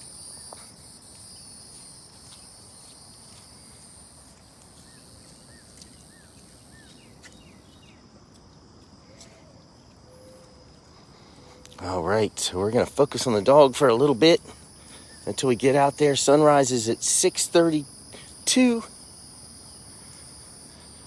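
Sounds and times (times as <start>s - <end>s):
insects trilling: 0.0s - 21.0s
bird chirps: 9.1s - 10.8s.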